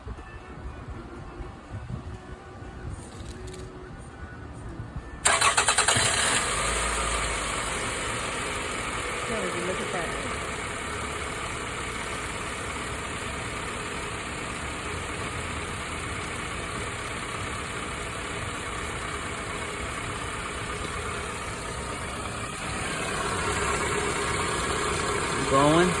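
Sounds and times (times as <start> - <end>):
car engine idling: 5.2 - 26.0.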